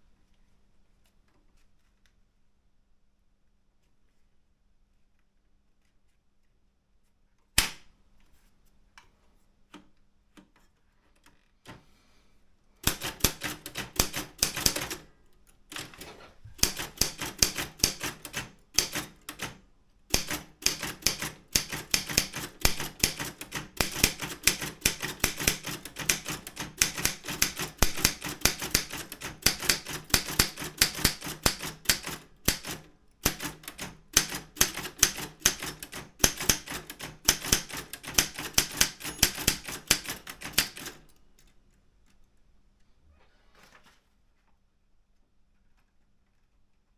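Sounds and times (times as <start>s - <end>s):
typewriter key strikes: 12.8s - 15.1s, 15.7s - 41.2s.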